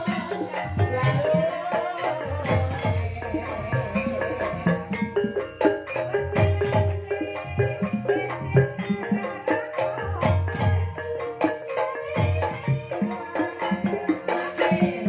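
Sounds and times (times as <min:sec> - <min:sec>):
metallophones ringing: 0:00.0 - 0:15.0
low drum beats: 0:02.4 - 0:07.7.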